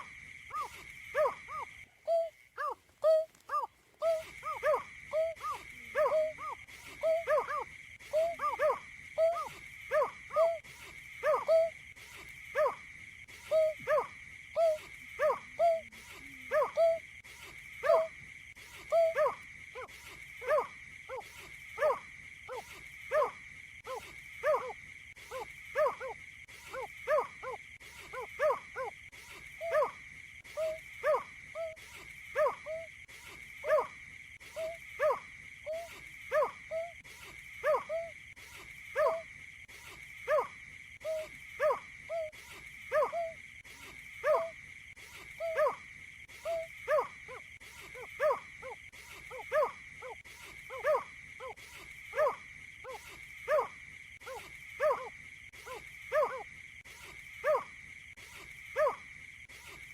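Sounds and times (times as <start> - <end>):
high insect-like hum: 0.0 - 59.9
marsh bird hooting: 0.5 - 10.6.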